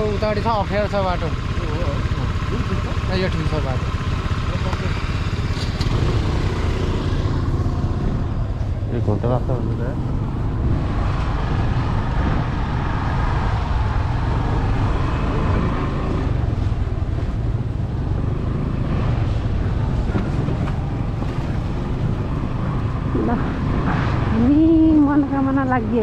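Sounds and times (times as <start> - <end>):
motorcycle engine running: 0.0 - 26.0
wind rumbling on microphone: 9.6 - 26.0.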